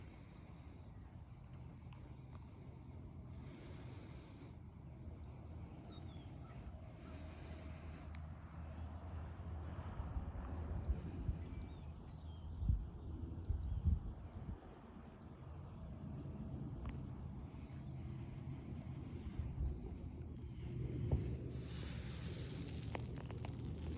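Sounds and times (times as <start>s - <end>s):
insect chirps: 21.6s - 23.9s.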